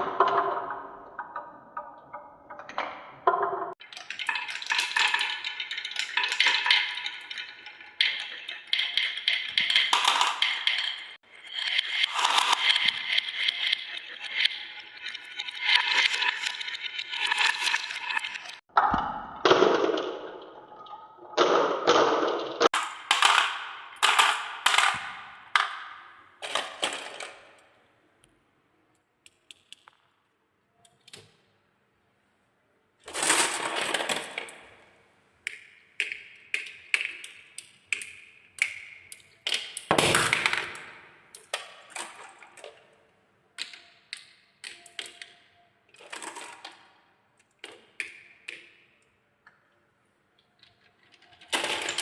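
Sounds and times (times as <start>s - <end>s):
marbles clattering down wooden run: 3.2s - 18.6s, 22.0s - 27.5s, 51.2s - 52.0s.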